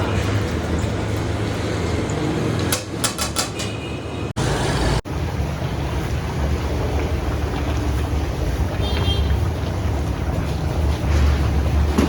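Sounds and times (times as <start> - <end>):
low mechanical rumble: 5.0 - 12.0.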